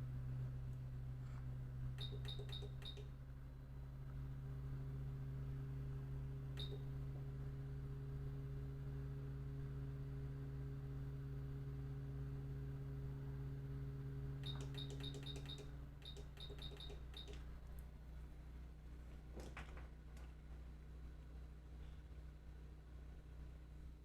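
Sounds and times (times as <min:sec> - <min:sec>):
electrical hum: 0:00.0 - 0:24.0
short high electronic beeps: 0:02.0 - 0:03.0, 0:14.4 - 0:17.4.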